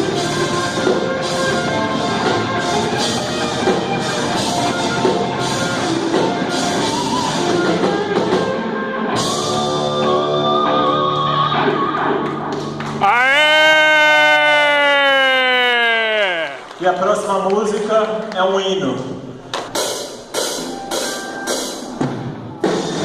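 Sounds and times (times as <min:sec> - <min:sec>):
rock band playing live: 0:00.0 - 0:15.3.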